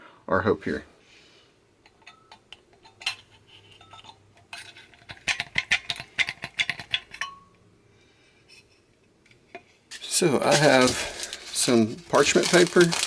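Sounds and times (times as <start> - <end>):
hard objects clicking and tapping: 1.8 - 7.6.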